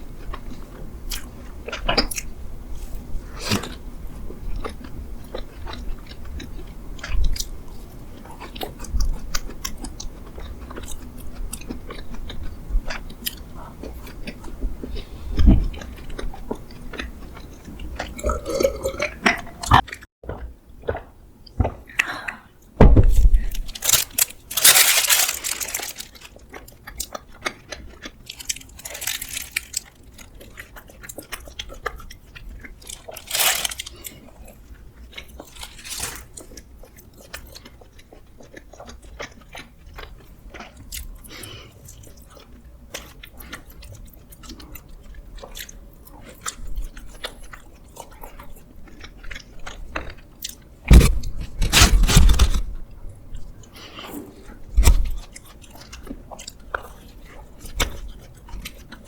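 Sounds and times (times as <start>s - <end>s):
crunching and chewing: 0.2s - 2.3s, 2.9s - 20.0s, 23.4s - 59.0s
loud crackly bursts: 23.7s - 26.3s, 28.3s - 29.9s, 32.9s - 34.0s.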